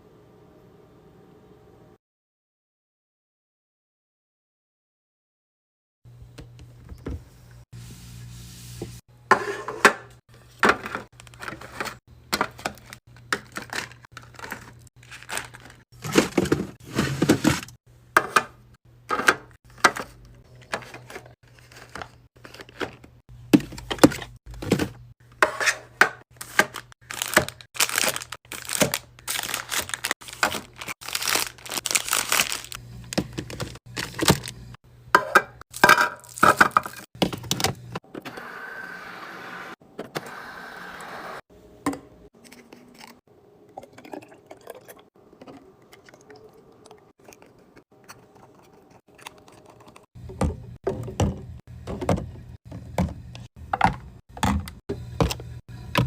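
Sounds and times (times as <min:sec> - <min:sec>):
items knocking: 0:09.3 - 0:38.0, 0:50.2 - 0:56.0
plastic packaging crinkling: 0:12.8 - 0:15.8, 0:26.4 - 0:34.8, 0:36.2 - 0:37.0.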